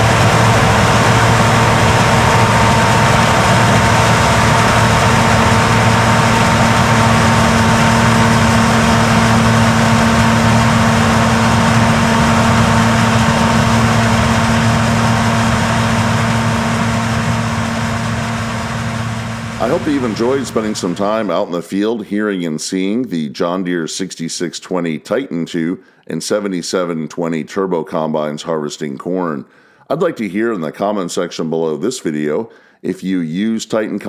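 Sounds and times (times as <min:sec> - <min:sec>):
combine harvester engine running: 0:00.0 - 0:21.3.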